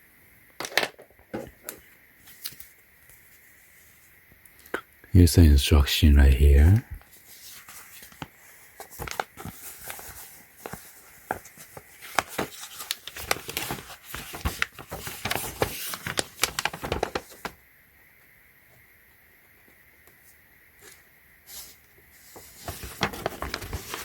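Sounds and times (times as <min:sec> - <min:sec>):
paper crinkling and rustling: 0:01.5 - 0:03.4, 0:07.1 - 0:17.6, 0:20.8 - 0:24.0.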